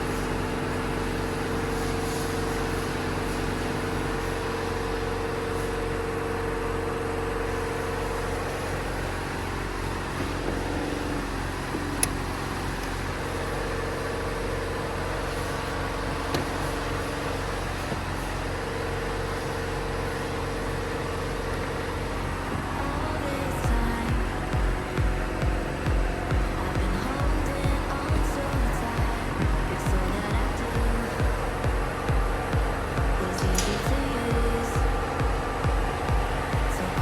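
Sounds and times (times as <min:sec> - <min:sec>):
coffee machine humming: 0:00.0 - 0:37.0
mid-pitched tone: 0:22.4 - 0:37.0.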